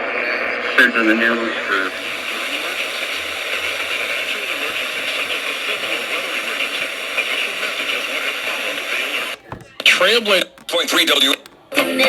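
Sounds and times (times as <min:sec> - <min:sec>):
radio static hiss: 0:00.0 - 0:11.8.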